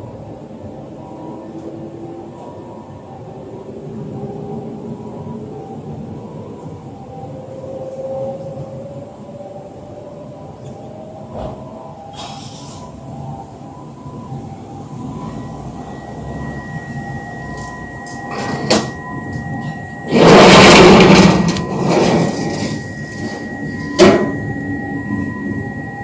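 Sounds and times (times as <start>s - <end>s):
shutters rattling along track: 16.9s - 25.3s.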